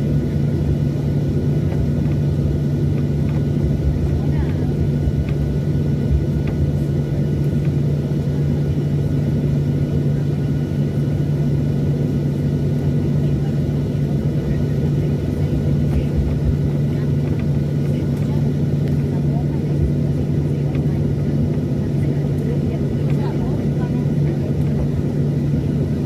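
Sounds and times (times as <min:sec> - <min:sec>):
jet engines humming: 0:00.0 - 0:26.0.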